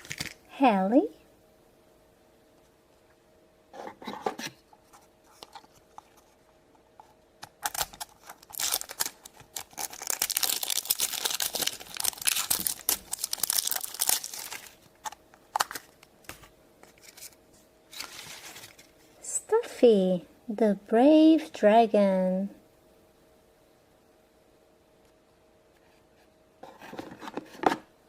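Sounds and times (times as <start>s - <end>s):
wrapper tearing and crinkling: 0.0s - 0.4s, 7.6s - 16.0s.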